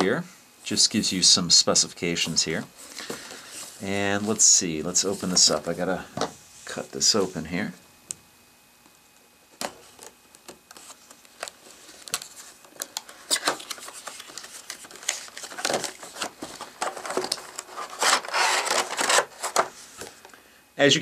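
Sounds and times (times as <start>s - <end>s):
packaging rustling and crinkling: 9.6s - 20.2s.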